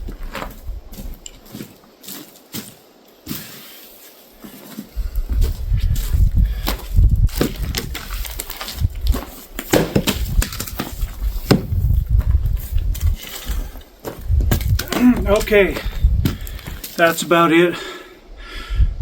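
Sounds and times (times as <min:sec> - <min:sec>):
gusty low rumble: 0:05.0 - 0:09.2, 0:10.2 - 0:16.8, 0:18.2 - 0:19.0
wood knocking and cracking: 0:07.3 - 0:11.8, 0:14.0 - 0:15.5.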